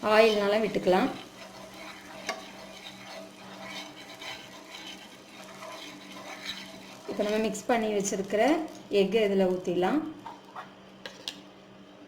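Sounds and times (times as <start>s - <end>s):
butter sizzling on griddle: 0.0s - 8.3s.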